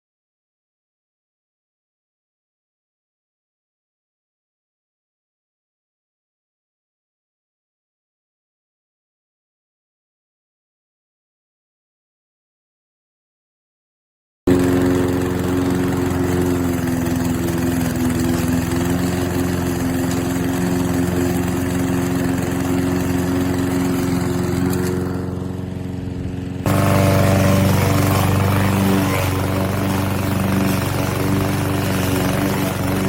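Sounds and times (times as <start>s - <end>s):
lawn mower engine running: 14.5s - 33.0s.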